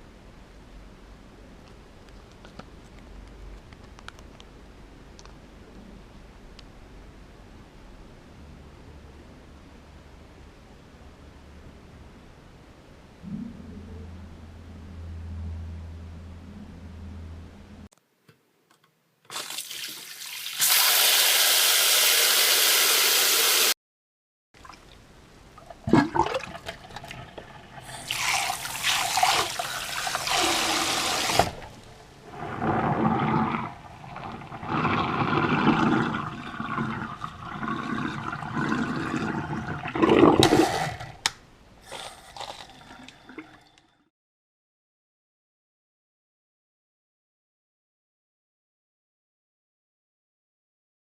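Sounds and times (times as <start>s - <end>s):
tap water running and splashing: 19.3s - 23.7s, 26.6s - 31.7s.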